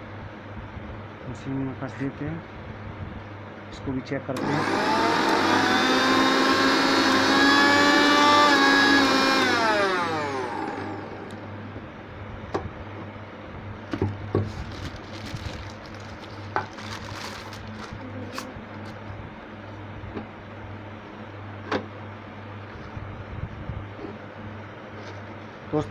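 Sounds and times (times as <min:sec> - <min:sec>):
mixer grinder motor whine: 0:04.3 - 0:11.6.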